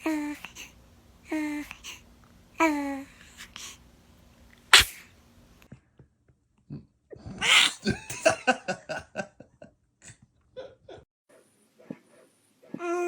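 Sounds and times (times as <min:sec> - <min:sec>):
baby sneezing: 0:04.7 - 0:05.1, 0:07.4 - 0:07.8.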